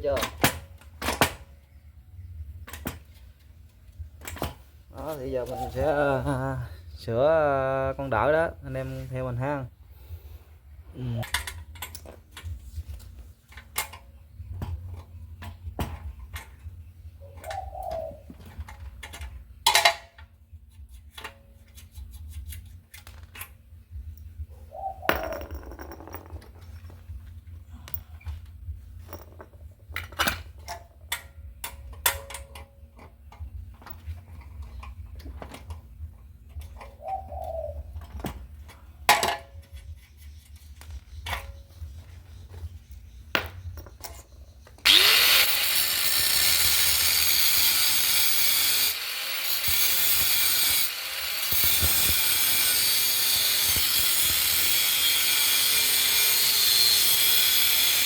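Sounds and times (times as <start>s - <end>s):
metal tools clicking and knocking: 18.5s - 20.3s, 25.1s - 27.2s, 27.8s - 35.9s, 38.0s - 44.8s
electric power tool on steel: 44.8s - 58.0s.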